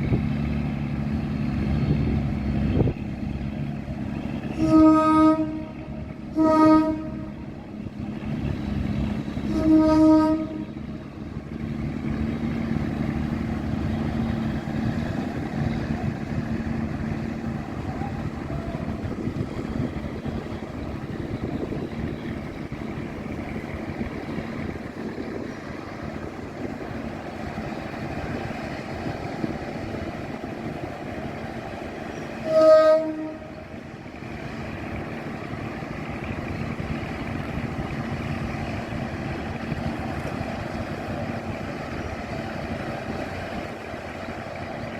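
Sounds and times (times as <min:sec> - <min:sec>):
diesel railcar engine and rail noise: 0:00.0 - 0:44.9
train horn blast: 0:04.3 - 0:07.7, 0:08.7 - 0:11.0, 0:32.2 - 0:33.8.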